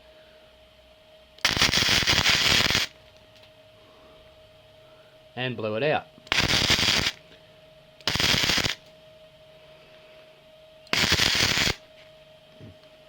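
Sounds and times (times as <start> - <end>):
faint steady hum: 0.0 - 13.0
welder arcing crackle: 1.4 - 3.5, 6.3 - 7.2, 8.0 - 8.9, 10.9 - 11.8.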